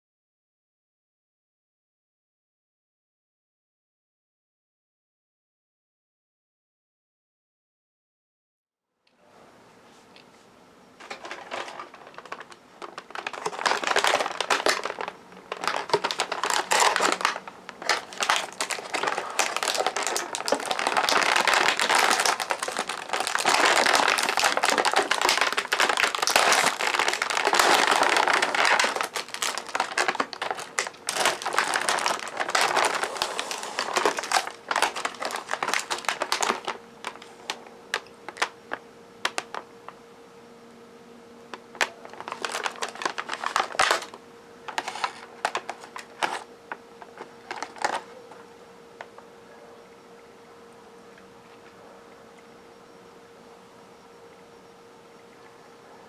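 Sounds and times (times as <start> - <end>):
plastic packaging crinkling: 11.0 - 40.0, 41.5 - 48.5.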